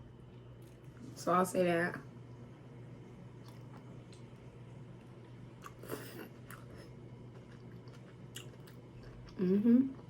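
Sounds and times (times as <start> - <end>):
person chewing: 3.4 - 4.4, 5.0 - 10.0.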